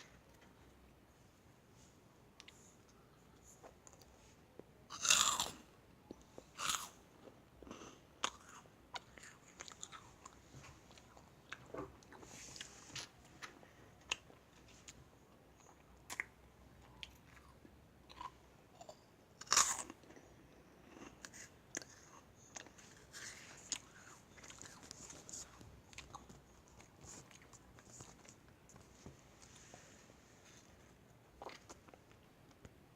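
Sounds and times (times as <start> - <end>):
crunching meringue cookies: 3.6 - 15.0, 15.6 - 29.7
chewing: 4.9 - 15.0, 20.8 - 29.7.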